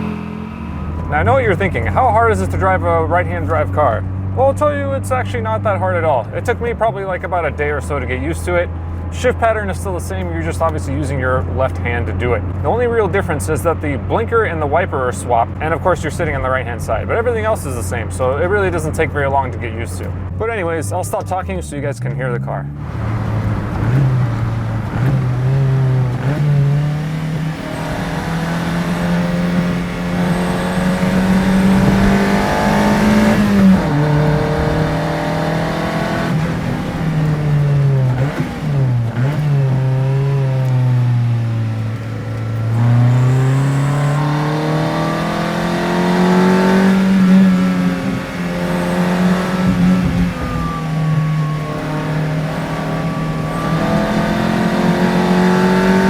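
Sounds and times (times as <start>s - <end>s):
car engine revving through gears: 0.0s - 56.0s.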